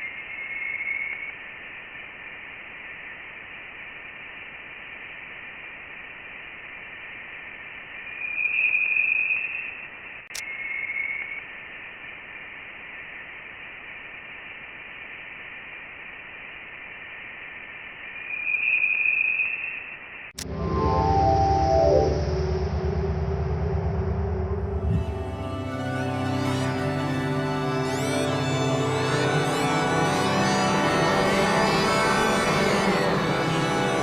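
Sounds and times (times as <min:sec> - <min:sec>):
steady static hiss: 0:01.0 - 0:08.3, 0:11.3 - 0:18.5
high whining tone: 0:20.4 - 0:34.0.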